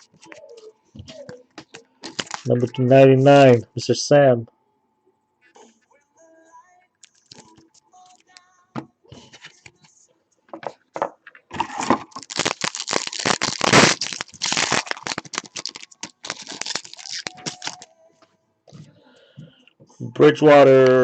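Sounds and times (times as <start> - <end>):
wrapper crackling: 2.0 - 2.5, 11.6 - 17.9
wrapper crinkling: 2.0 - 2.6, 11.6 - 17.9.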